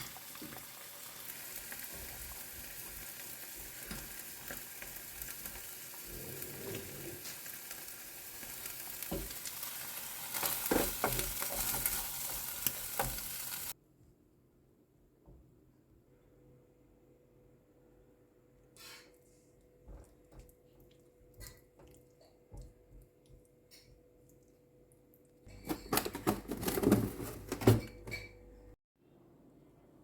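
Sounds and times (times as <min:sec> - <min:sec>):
food sizzling in a pan: 0:00.0 - 0:13.8.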